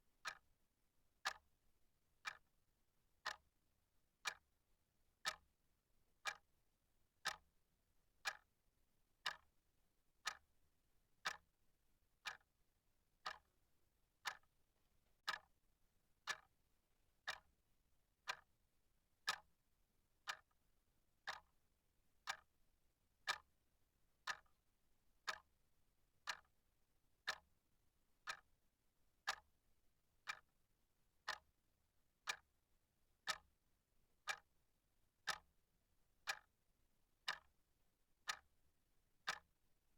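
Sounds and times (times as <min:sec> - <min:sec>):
clock ticking: 0:00.2 - 0:00.4, 0:02.2 - 0:02.4, 0:03.2 - 0:03.4, 0:04.2 - 0:04.4, 0:05.2 - 0:05.4, 0:07.2 - 0:07.4, 0:10.2 - 0:10.4, 0:11.2 - 0:11.4, 0:13.2 - 0:13.5, 0:14.2 - 0:14.5, 0:15.2 - 0:15.5, 0:16.2 - 0:16.5, 0:17.2 - 0:17.5, 0:19.3 - 0:19.5, 0:20.2 - 0:20.5, 0:21.3 - 0:21.5, 0:22.2 - 0:22.5, 0:23.2 - 0:23.5, 0:24.2 - 0:24.5, 0:25.2 - 0:25.5, 0:26.2 - 0:26.5, 0:27.3 - 0:27.5, 0:28.2 - 0:28.5, 0:29.3 - 0:29.5, 0:30.2 - 0:30.4, 0:31.3 - 0:31.5, 0:32.2 - 0:32.4, 0:33.2 - 0:33.5, 0:34.3 - 0:34.5, 0:35.3 - 0:35.5, 0:36.3 - 0:36.5, 0:37.3 - 0:37.5, 0:38.3 - 0:38.5, 0:39.3 - 0:39.5.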